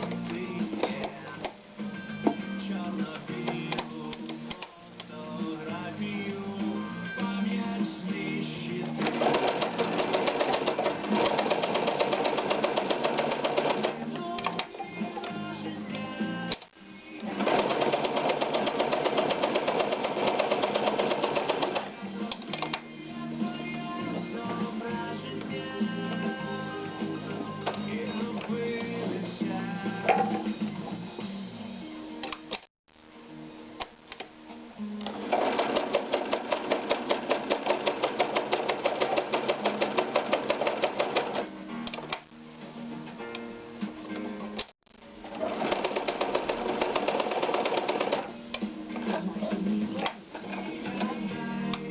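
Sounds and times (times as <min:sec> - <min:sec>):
radio music: 0:00.0 - 0:20.0, 0:20.6 - 0:36.8, 0:47.7 - 0:51.9
sewing machine running: 0:09.0 - 0:14.0, 0:17.3 - 0:21.9, 0:35.2 - 0:41.4, 0:45.3 - 0:48.3.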